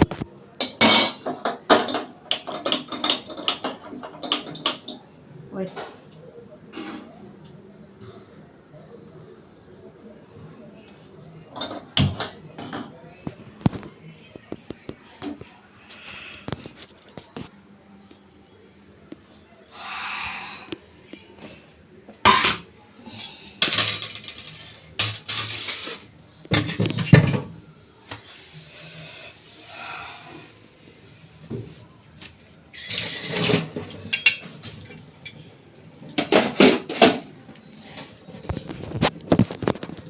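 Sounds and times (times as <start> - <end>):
dishes and utensils clinking: 0.1 - 5.0, 22.2 - 22.7, 32.7 - 35.5.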